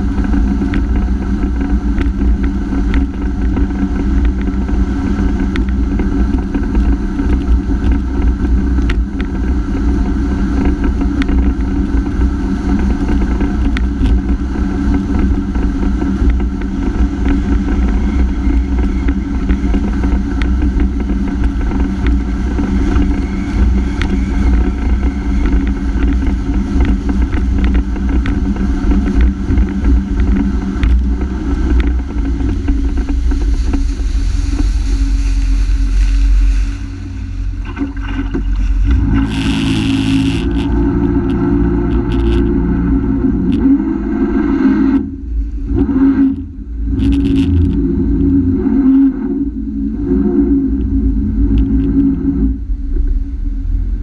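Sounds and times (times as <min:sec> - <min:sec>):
jet ski engine running: 0:00.0 - 0:54.0
rumble of water and wind: 0:00.0 - 0:54.0.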